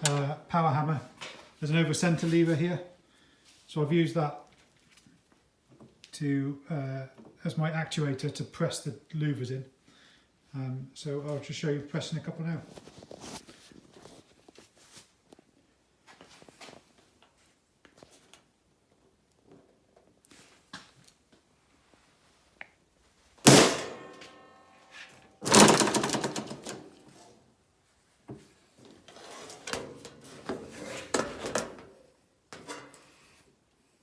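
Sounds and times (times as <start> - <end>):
heavy metallic clunks: 23.5 - 24.4
sheet metal ringing: 23.5 - 24.8.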